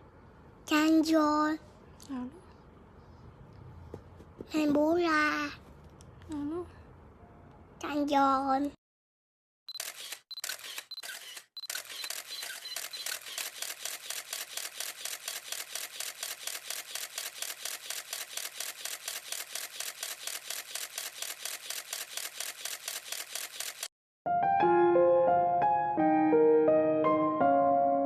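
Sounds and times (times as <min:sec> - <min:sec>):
rapid sharp clicks: 0:09.7 - 0:23.9.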